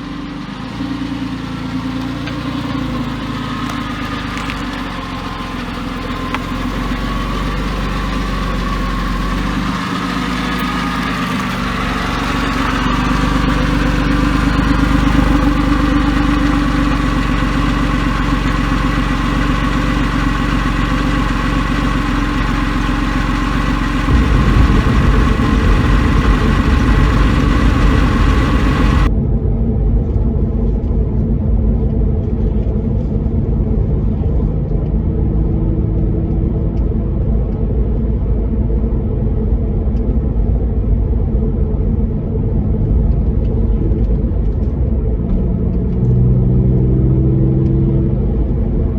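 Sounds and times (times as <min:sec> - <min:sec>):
car engine idling: 0:00.0 - 0:29.1.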